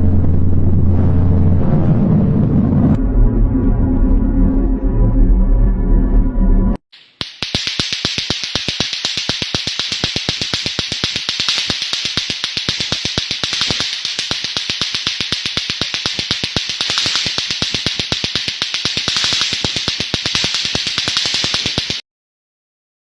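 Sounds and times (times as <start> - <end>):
steady hiss: 7.0 - 22.0
fast train of clicks: 7.2 - 22.0.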